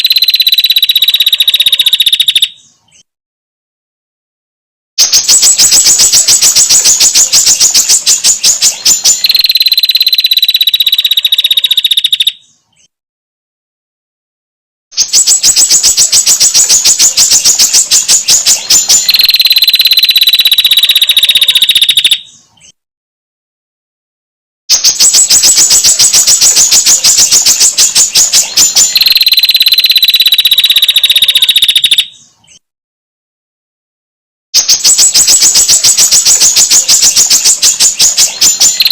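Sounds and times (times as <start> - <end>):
birds' metallic ticking trill: 0.0 - 3.1, 5.0 - 12.9, 15.0 - 22.4, 24.7 - 32.6, 34.6 - 38.9.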